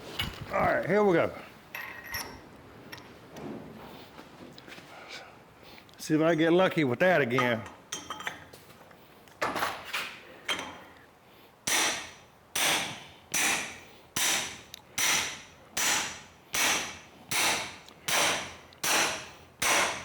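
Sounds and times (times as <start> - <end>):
hammer striking metal: 11.7 - 20.0.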